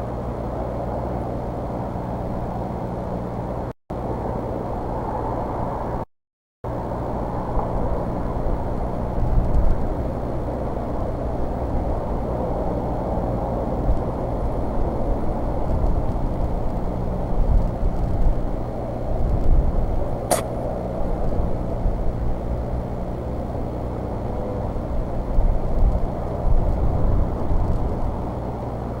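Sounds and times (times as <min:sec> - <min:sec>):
low outdoor rumble: 0:00.0 - 0:06.1, 0:06.7 - 0:29.0
sharp click: 0:20.3 - 0:20.5.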